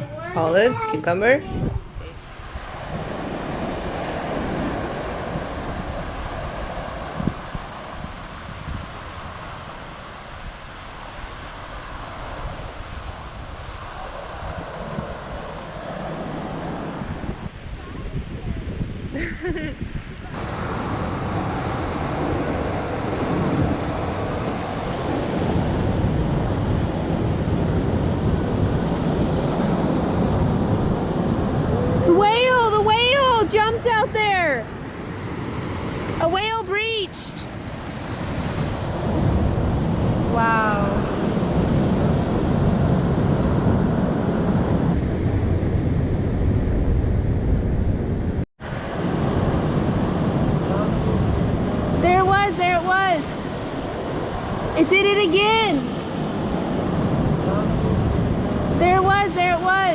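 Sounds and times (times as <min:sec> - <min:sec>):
ocean surf breaking: 0:00.0 - 0:59.9
wind rumbling on microphone: 0:00.0 - 0:59.9.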